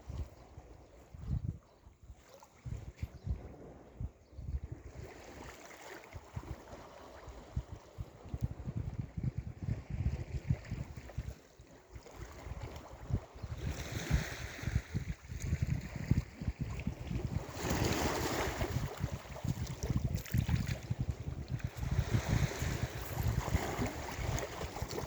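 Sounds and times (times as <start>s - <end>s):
wind rumbling on microphone: 0.0s - 25.0s
sea waves breaking on shore: 16.9s - 25.0s.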